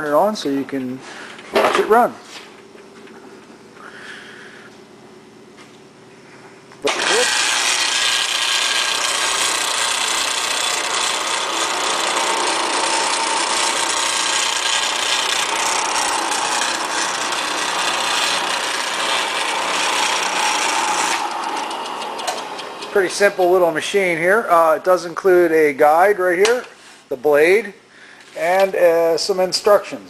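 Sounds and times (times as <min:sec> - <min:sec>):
band saw running: 0:06.8 - 0:25.5.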